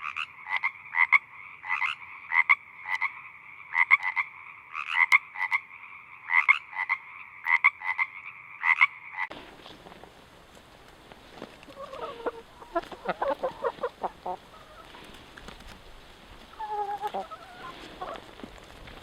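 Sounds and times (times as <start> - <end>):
frogs calling: 0.0 - 9.3, 11.7 - 18.4
outdoor background noise: 0.0 - 19.0
short clucking calls: 11.7 - 15.5, 16.4 - 18.4.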